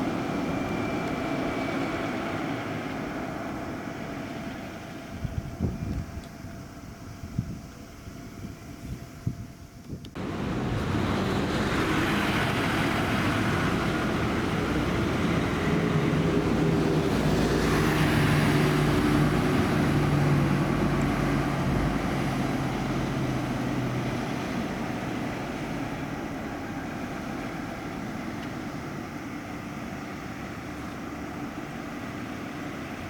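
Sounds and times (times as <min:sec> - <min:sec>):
bus diesel engine passing: 0:00.0 - 0:05.3, 0:10.2 - 0:33.0.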